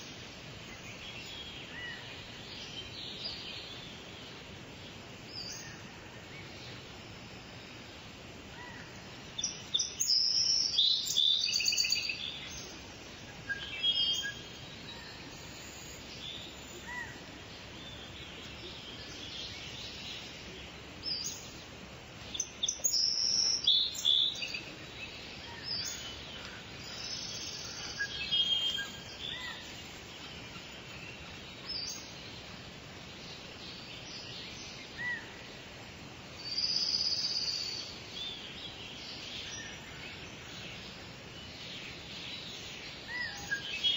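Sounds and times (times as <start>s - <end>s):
songbirds singing and chirping: 0.0s - 43.9s
steady outdoor hiss: 0.0s - 43.9s.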